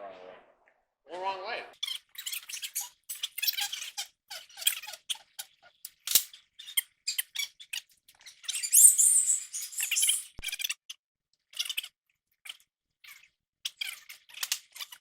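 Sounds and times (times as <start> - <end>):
metal squeaks and ticks: 1.8 - 10.9.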